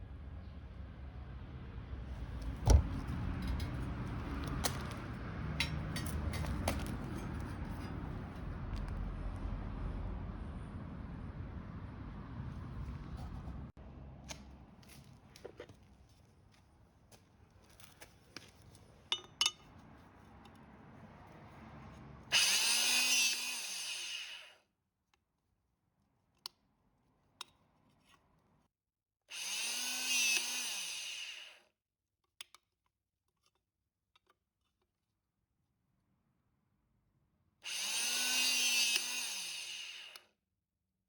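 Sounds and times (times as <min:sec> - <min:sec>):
power tool motor spinning: 0:22.3 - 0:24.5, 0:29.3 - 0:31.6, 0:37.7 - 0:40.2.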